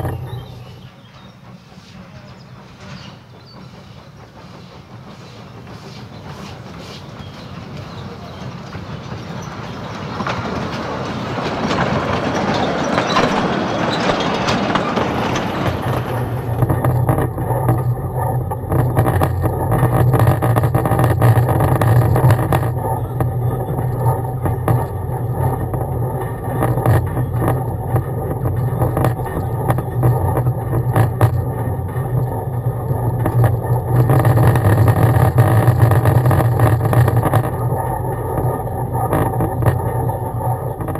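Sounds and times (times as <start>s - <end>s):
low engine drone: 0.0s - 3.0s, 10.1s - 40.9s
train rushing and rattling: 0.0s - 40.9s
clicks and knocks: 10.2s - 40.9s.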